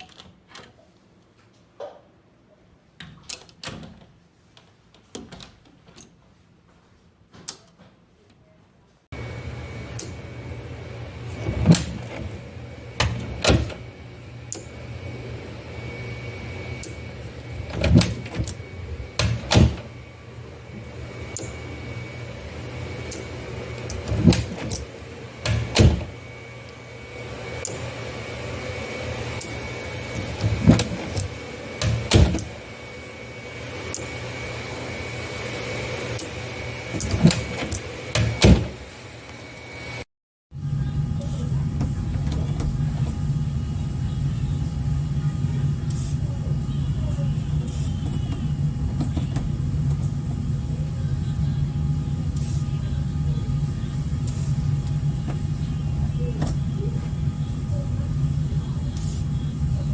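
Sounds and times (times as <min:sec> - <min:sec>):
steady room hum: 0:00.0 - 0:59.9
door lock clicking: 0:13.0 - 0:13.9, 0:17.6 - 0:20.0.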